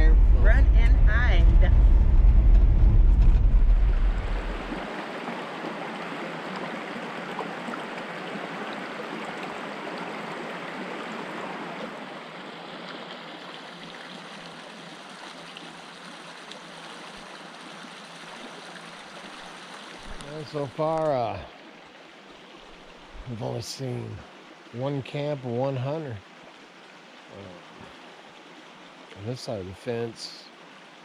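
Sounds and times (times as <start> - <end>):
vehicle engine rumble: 0.0 - 4.9
creek water rushing: 0.0 - 31.0.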